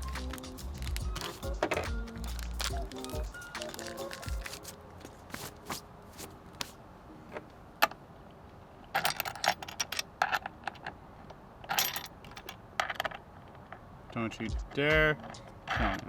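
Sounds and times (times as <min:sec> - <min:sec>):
metal hardware clinking and rattling: 0:08.9 - 0:10.9, 0:11.6 - 0:13.2.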